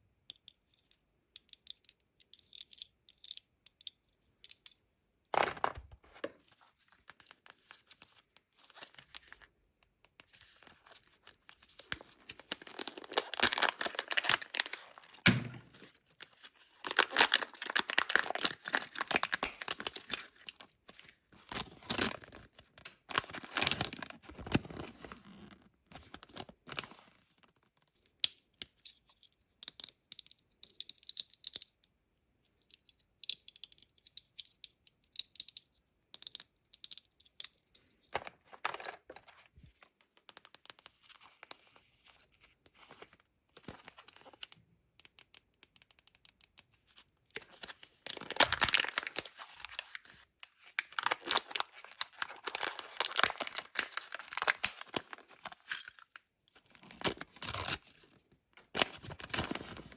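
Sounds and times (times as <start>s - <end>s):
wrapper tearing and crackling: 11.9s - 15.3s, 16.2s - 20.6s, 47.4s - 57.8s.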